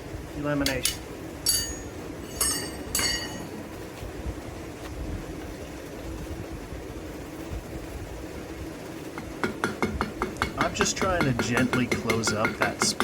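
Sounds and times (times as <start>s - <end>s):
hammer taps on hot iron: 9.2s - 13.0s.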